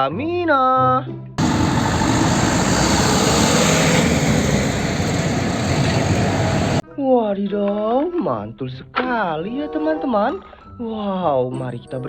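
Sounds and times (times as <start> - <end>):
water spraying from hose: 1.4 - 6.8.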